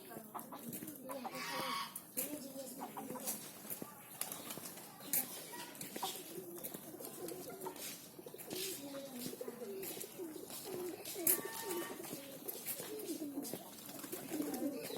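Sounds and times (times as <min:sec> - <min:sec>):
pigeons cooing: 0:04.2 - 0:14.9.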